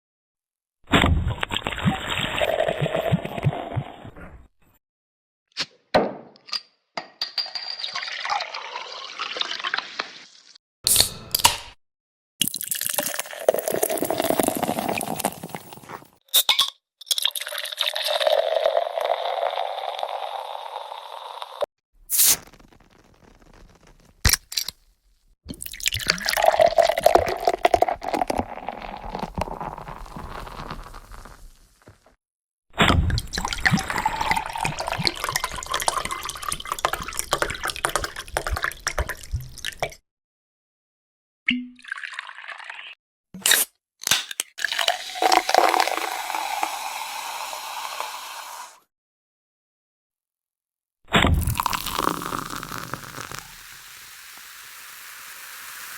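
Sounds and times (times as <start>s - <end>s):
liquid pouring and glugging: 1.2s - 4.2s, 7.8s - 10.1s, 12.4s - 16.2s, 17.1s - 21.2s, 25.5s - 32.0s, 33.1s - 40.0s, 41.6s - 43.0s, 44.6s - 48.0s, 51.2s - 54.2s
wet crackling squishy hiss: 51.6s - 55.9s.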